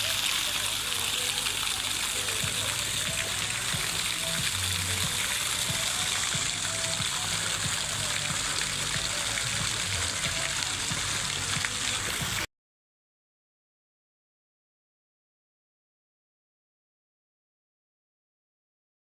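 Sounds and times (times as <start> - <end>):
running water splashing: 0.0 - 12.5
soft music: 0.0 - 12.5.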